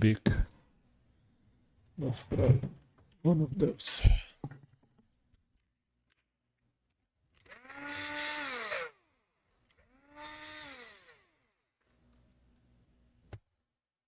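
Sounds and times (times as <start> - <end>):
electric screwdriver motor: 7.4 - 9.0, 9.7 - 11.5.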